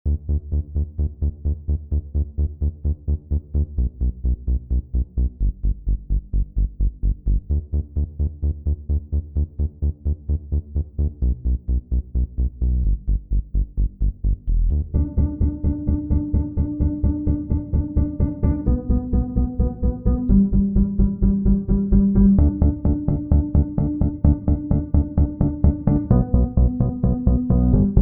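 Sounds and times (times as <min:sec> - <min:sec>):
electronic music with pulsing beat: 0:14.6 - 0:28.0.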